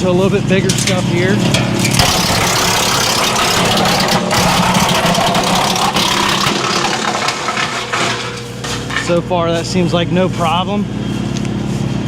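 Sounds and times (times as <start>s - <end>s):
tractor diesel engine running: 0.0s - 12.0s
wood chipper chipping branches: 0.7s - 9.3s.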